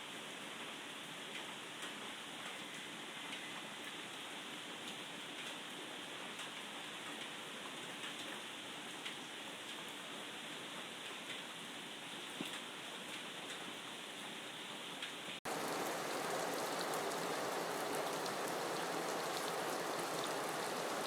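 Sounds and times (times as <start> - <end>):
steady rain hiss: 15.4 - 21.0
raindrops ticking: 15.5 - 21.0.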